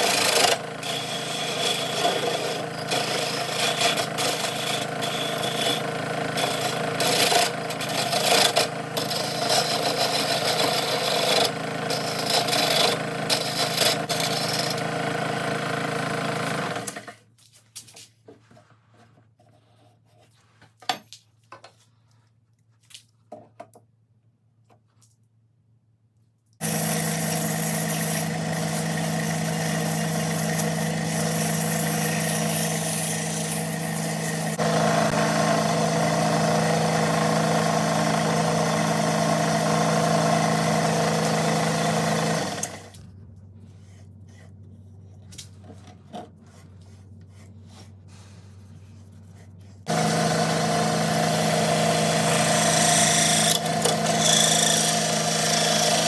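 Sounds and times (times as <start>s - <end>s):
power tool motor humming and rasping: 0.0s - 17.1s, 26.6s - 43.0s, 49.9s - 56.0s.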